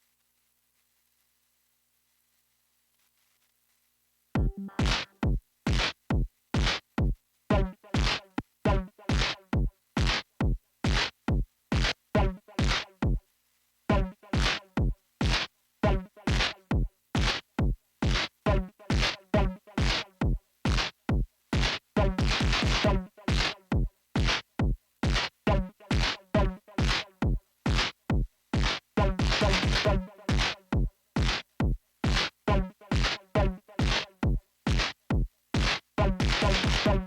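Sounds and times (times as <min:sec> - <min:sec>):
synthesizer percussive hits: 0:04.4 - 0:05.1.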